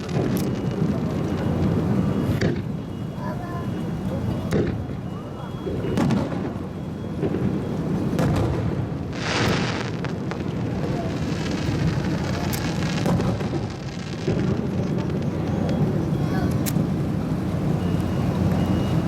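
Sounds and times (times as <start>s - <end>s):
continuous low rumble: 0.0s - 19.0s
fireworks bangs: 0.0s - 19.0s
fireworks hiss: 9.0s - 19.0s.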